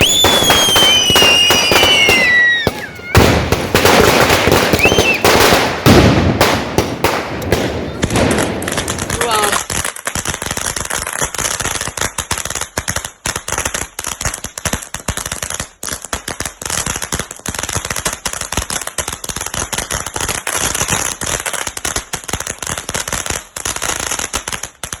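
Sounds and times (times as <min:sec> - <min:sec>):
firecrackers banging: 0:00.0 - 0:14.6.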